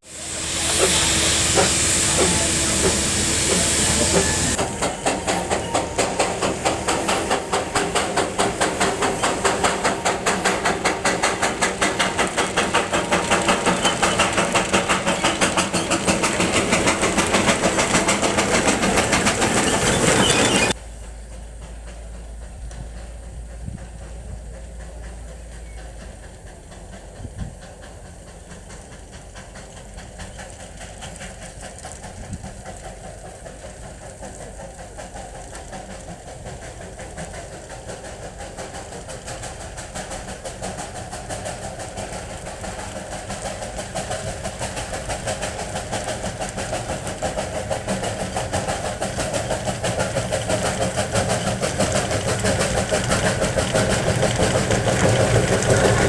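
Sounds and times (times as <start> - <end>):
steam locomotive chugging: 0.0 - 56.0.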